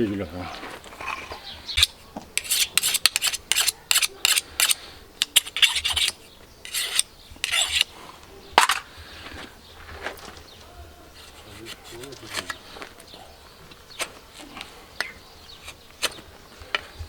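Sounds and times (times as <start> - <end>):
rasp scraping a hoof: 1.8 - 8.0, 11.1 - 12.6, 15.5 - 16.4.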